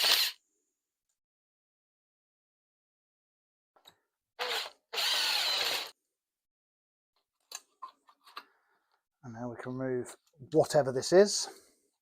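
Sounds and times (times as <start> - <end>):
power tool running: 4.4 - 5.9.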